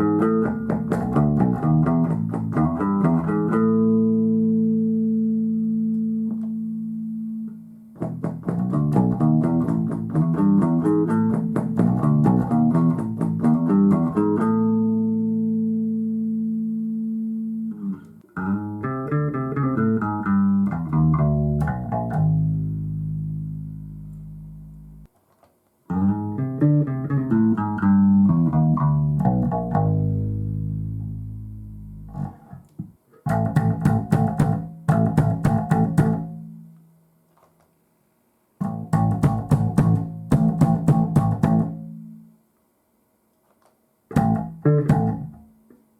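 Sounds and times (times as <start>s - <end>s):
electric bass guitar: 0.0s - 25.1s, 25.9s - 36.8s, 38.6s - 42.3s, 44.1s - 45.8s.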